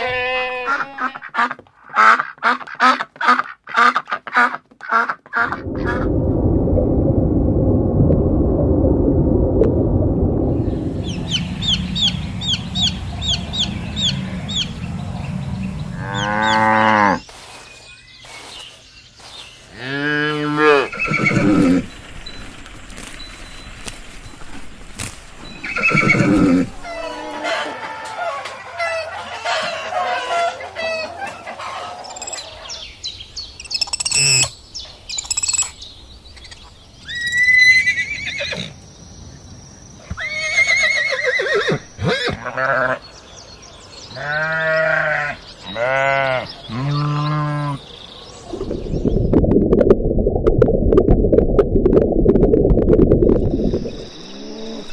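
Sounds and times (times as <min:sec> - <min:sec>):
low rumble: 0:05.4 - 0:17.2, 0:21.4 - 0:27.4, 0:48.4 - 0:54.9
young bird peeping: 0:10.9 - 0:16.7
chickens clucking: 0:11.0 - 0:16.7, 0:25.9 - 0:32.8
cow mooing: 0:12.9 - 0:17.2, 0:44.2 - 0:47.8.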